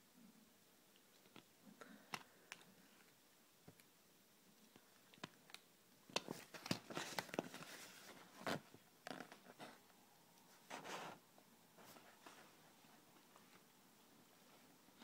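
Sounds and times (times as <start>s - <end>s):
packaging crinkling: 6.2s - 9.5s.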